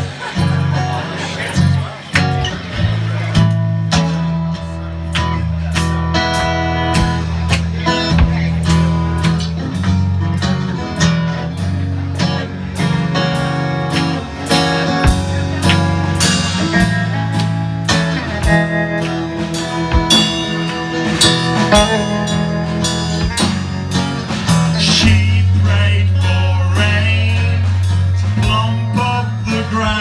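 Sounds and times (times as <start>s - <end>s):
strummed guitar: 0.0s - 30.0s
sustained bass notes: 0.0s - 30.0s.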